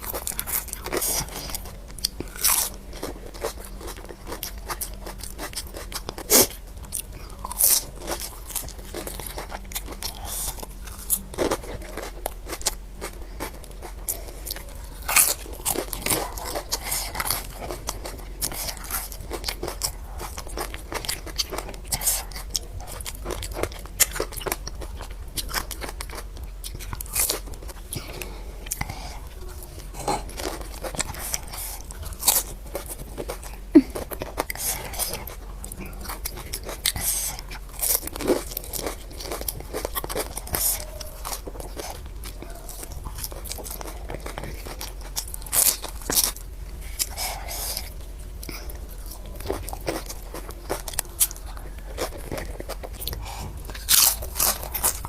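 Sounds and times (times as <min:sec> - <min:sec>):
crunchy shells being chewed: 0:00.0 - 0:55.0.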